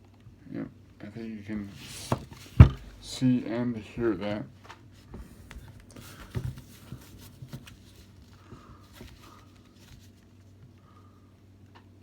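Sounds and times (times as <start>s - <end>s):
rustling: 1.5s - 10.6s.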